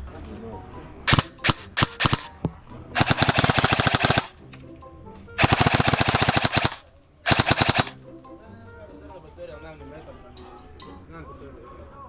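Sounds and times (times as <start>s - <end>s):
airsoft rifle firing full auto: 1.1s - 4.4s, 5.4s - 8.0s.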